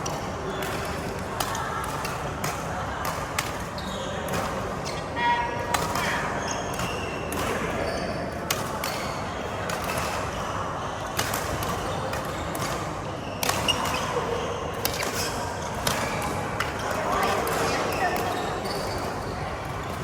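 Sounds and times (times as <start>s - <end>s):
rackets hitting shuttlecock: 0.0s - 5.0s, 5.6s - 7.8s, 8.4s - 20.0s
shoes squeaking on court floor: 3.4s - 10.6s, 11.6s - 20.0s.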